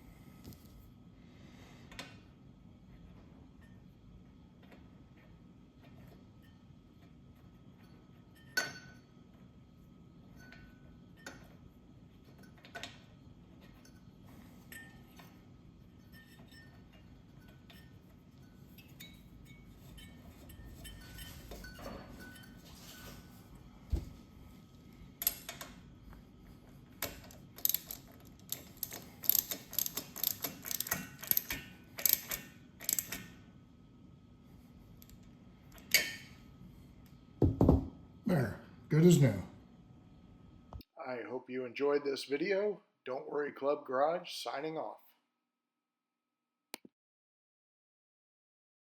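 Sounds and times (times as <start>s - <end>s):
metallic clicks of hand tools: 27.0s - 33.2s.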